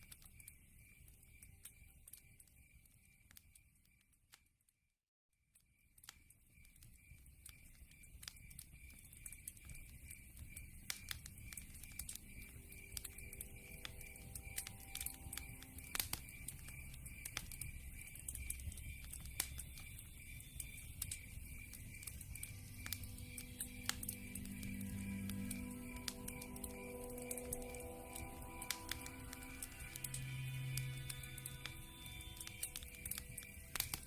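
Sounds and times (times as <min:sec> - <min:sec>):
wood fire crackling: 0:00.0 - 0:03.9, 0:05.7 - 0:34.0
soft music: 0:11.5 - 0:18.7, 0:21.7 - 0:34.0.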